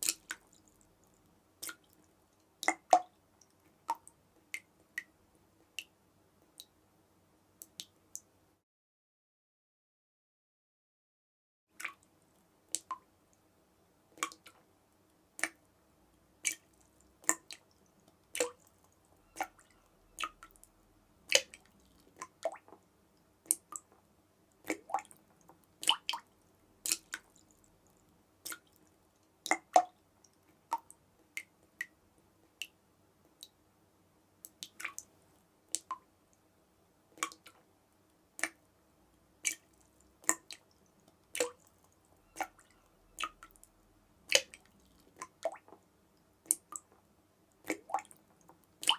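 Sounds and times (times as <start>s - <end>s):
water dripping: 0.0s - 6.8s, 7.6s - 8.3s, 11.8s - 13.4s, 14.2s - 33.6s, 34.4s - 36.4s, 37.2s - 48.9s
faint steady hum: 12.0s - 48.9s.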